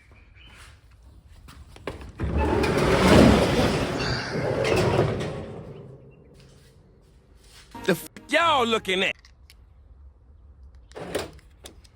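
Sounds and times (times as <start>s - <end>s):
large door sliding open: 2.2s - 6.7s.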